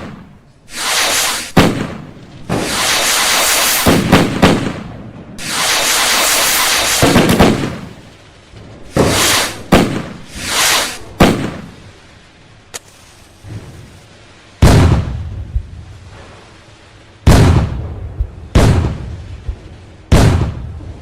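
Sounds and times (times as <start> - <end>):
fireworks bangs: 0.0 - 8.2, 8.8 - 12.0, 14.6 - 15.7, 17.2 - 21.0
fireworks hissing and crackling: 0.7 - 4.7, 5.4 - 15.1.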